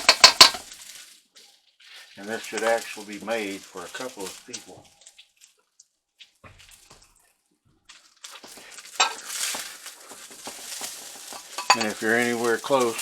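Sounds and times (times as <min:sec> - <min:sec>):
utensil clink against pan: 0:00.0 - 0:00.6, 0:09.0 - 0:09.3, 0:11.3 - 0:13.0
utensil scraping rice in pan: 0:00.0 - 0:05.5, 0:08.0 - 0:13.0
steady sizzle: 0:00.0 - 0:13.0.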